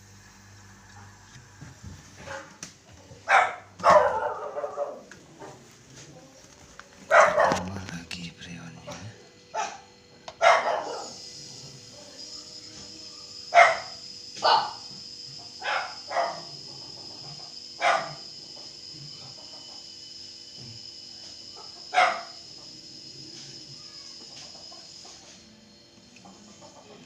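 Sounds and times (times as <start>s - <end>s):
steady high whine: 0.0s - 27.0s
dog barking: 2.2s - 2.6s, 3.2s - 5.6s, 7.1s - 7.7s, 9.5s - 11.2s, 13.5s - 14.8s, 15.6s - 16.5s, 17.8s - 18.3s, 21.6s - 22.4s.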